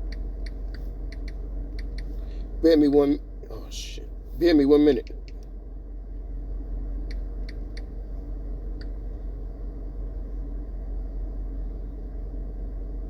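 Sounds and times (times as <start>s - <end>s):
low rumble: 0.0s - 13.0s.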